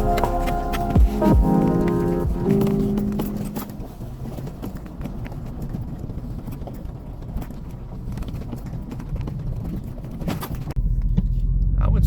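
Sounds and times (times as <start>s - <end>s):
loose rocks clicking and knocking: 2.6s - 10.8s.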